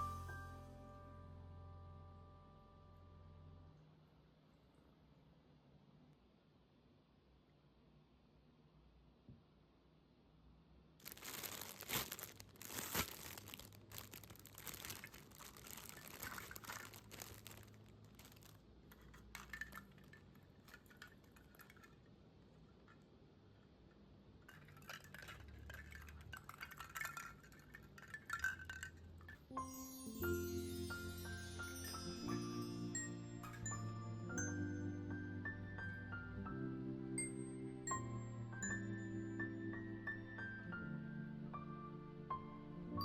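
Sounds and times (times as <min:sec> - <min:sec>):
packaging rustling and crinkling: 0:11.0 - 0:22.0, 0:24.5 - 0:29.3
small clinks of baubles: 0:11.2 - 0:22.2, 0:24.4 - 0:34.6.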